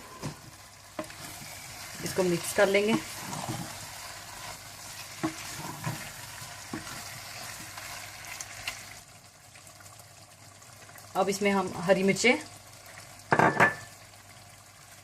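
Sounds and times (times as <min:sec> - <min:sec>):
meat and potatoes sizzling in oil: 0:00.0 - 0:15.0
spoon knocking against pot: 0:13.3 - 0:13.9.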